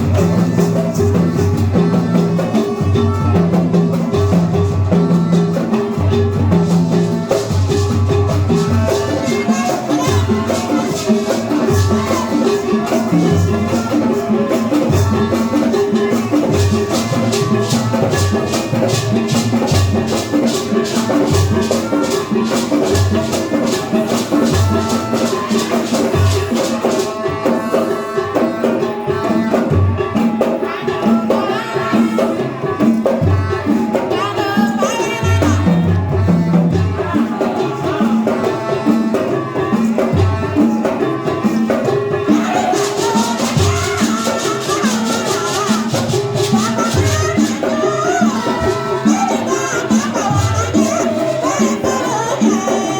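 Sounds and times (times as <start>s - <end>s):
percussion music with steady beat: 0.0s - 52.9s.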